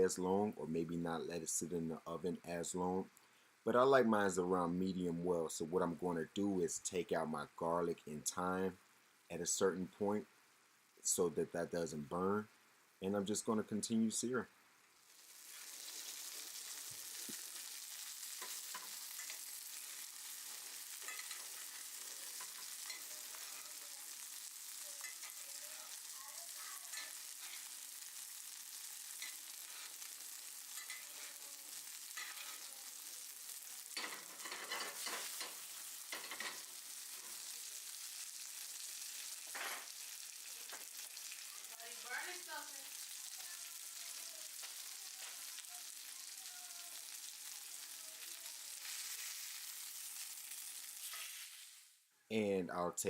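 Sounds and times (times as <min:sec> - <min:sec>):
steak sizzling in a skillet: 0:14.9 - 0:52.0.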